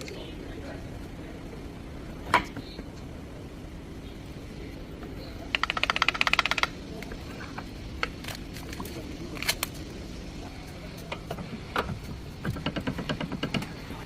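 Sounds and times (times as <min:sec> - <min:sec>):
ratchet wrench clicking: 0:05.6 - 0:06.8.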